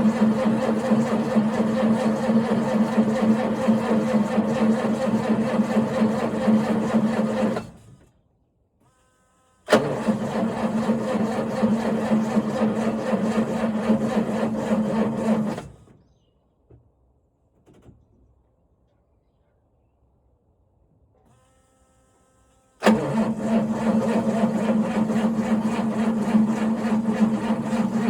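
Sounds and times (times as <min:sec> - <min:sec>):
starter motor cranking engine: 0:00.0 - 0:08.0, 0:09.7 - 0:15.9, 0:22.8 - 0:28.0.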